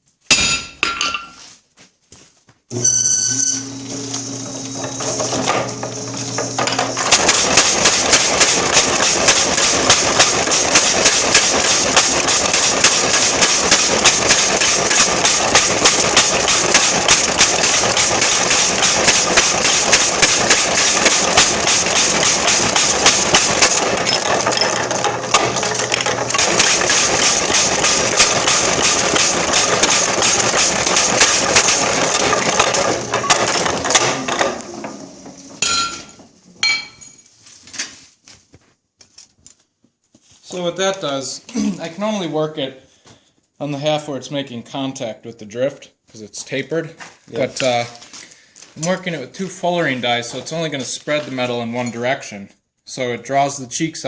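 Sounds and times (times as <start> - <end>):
machine running: 2.7 - 36.6
power hammer striking hot steel: 4.9 - 35.0, 35.6 - 37.1.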